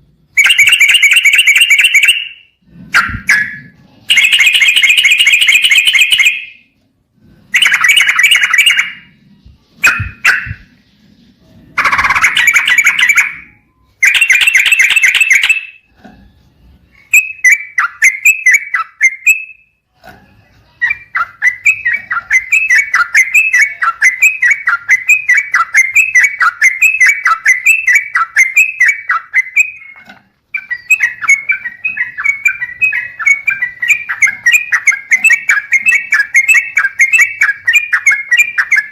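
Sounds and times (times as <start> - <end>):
bird rapid chirping: 0.4 - 6.7, 7.5 - 15.9, 16.9 - 19.8, 20.8 - 38.9
bird bubbling chatter: 11.8 - 13.4.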